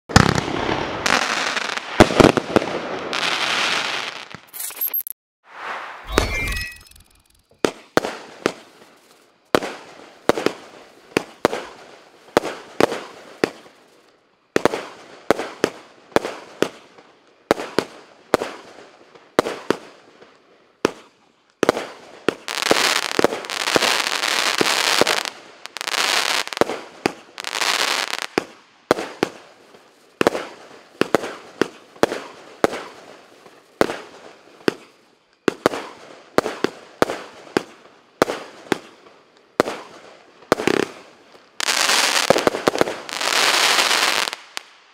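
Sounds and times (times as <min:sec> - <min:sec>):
fireworks bangs: 0:00.1 - 0:04.5, 0:07.5 - 0:13.8, 0:20.8 - 0:34.9, 0:35.5 - 0:44.8
fireworks crackling and hissing: 0:00.1 - 0:04.7, 0:05.5 - 0:06.1, 0:06.9 - 0:44.9.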